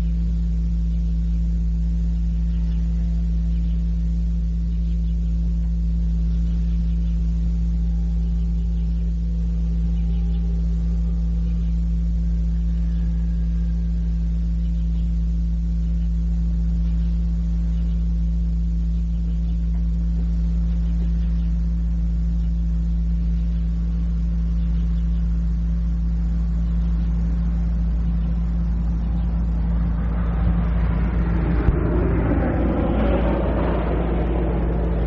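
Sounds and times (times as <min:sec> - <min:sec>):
low electrical hum: 0:00.0 - 0:35.0
vehicle engine approaching: 0:23.2 - 0:35.0.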